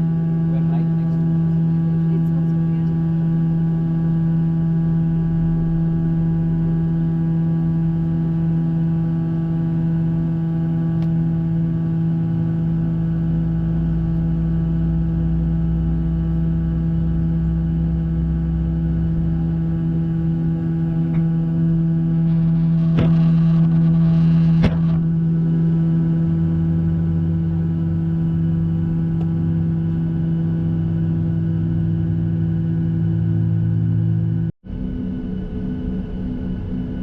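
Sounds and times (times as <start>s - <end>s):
aircraft cabin droning hum: 0.0s - 37.0s
low rumble: 0.0s - 37.0s
pulsing tone: 1.2s - 37.0s.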